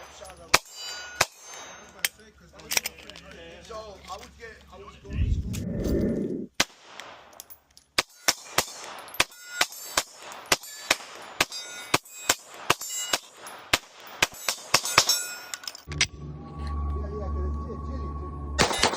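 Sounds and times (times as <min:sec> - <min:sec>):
rapid pistol shots: 0:08.0 - 0:11.6.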